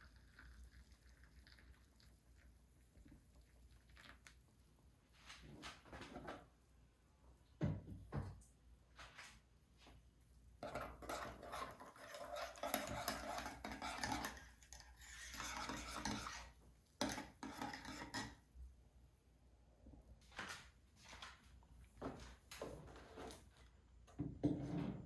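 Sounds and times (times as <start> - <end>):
rubbing and scraping: 10.6 - 16.5.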